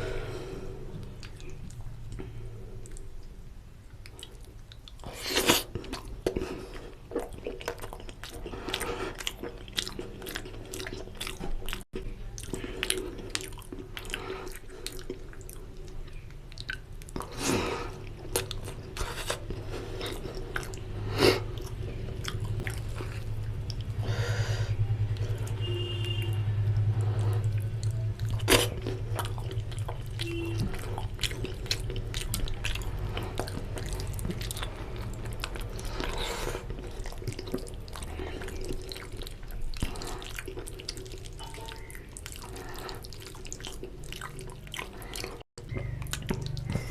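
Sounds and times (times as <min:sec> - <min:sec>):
low steady hum: 0:00.0 - 0:46.9
close chewing and biting: 0:04.0 - 0:24.1, 0:25.0 - 0:46.9
wet mouth clicks and smacks: 0:45.1 - 0:46.9.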